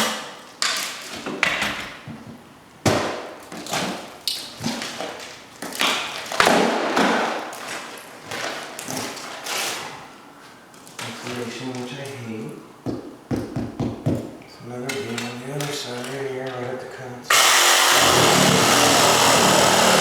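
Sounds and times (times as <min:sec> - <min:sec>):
heavy thumps and knocks on wall: 0:12.8 - 0:14.4.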